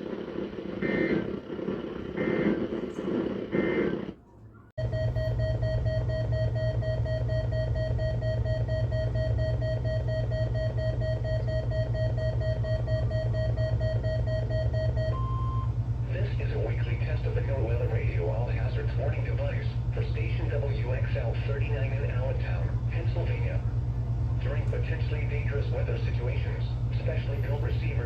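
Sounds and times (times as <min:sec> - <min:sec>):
low hum: 0:00.0 - 0:28.0
steady electronic alarm tone: 0:00.3 - 0:02.8, 0:03.4 - 0:04.1, 0:04.8 - 0:15.7.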